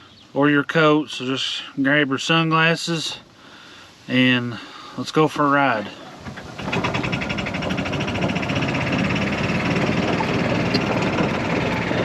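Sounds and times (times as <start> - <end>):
vehicle engine running: 6.1 - 12.0.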